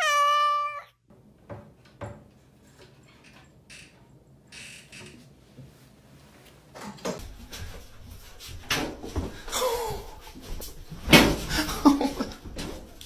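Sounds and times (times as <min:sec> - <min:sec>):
knocks and thumps: 0:01.1 - 0:02.4, 0:10.4 - 0:13.0.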